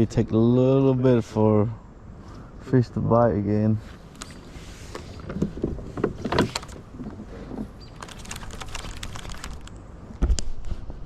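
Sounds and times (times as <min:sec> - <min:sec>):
small rapid ticks: 0:07.9 - 0:09.8.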